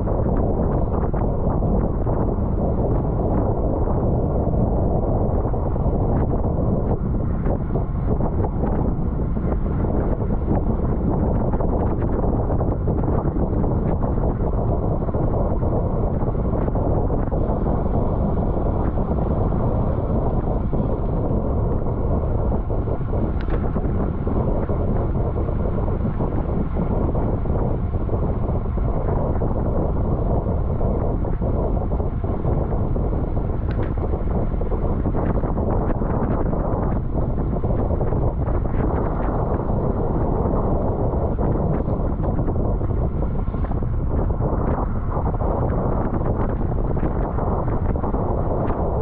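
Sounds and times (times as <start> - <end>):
wind buffeting microphone: 0.0 - 49.0.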